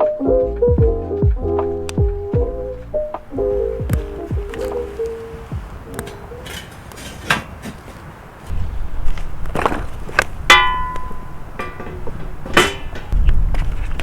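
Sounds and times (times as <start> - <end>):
ringing metallic clang: 3.1 - 7.8, 10.5 - 13.2
sharp knocks: 3.2 - 4.9.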